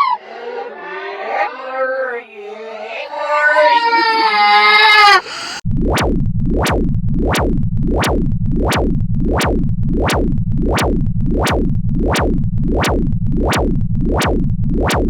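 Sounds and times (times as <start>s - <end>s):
pulsing buzzing alarm tone: 5.2s - 15.0s
sharp click: 6.0s - 15.0s.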